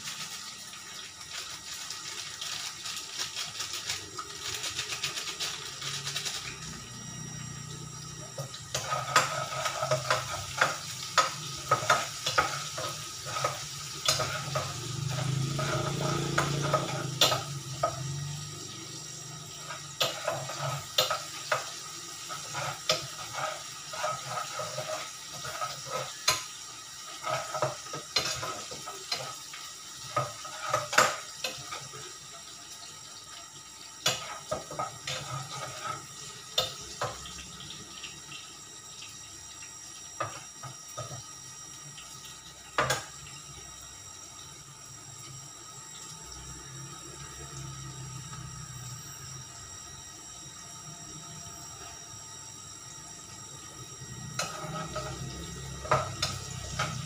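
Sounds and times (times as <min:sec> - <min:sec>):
food sizzling: 0:00.0 - 0:57.0
utensil scraping a pan: 0:08.7 - 0:17.5, 0:19.6 - 0:29.4, 0:30.1 - 0:31.9, 0:34.1 - 0:37.1.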